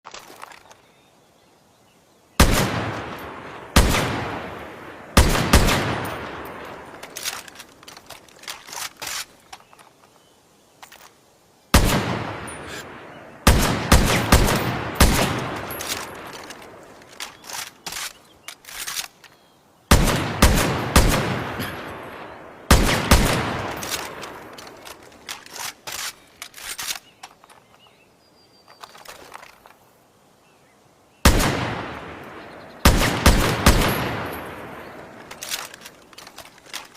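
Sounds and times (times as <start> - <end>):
rifle shots with echo: 2.4 - 7.4, 11.7 - 16.8, 19.9 - 25.0, 31.2 - 35.8.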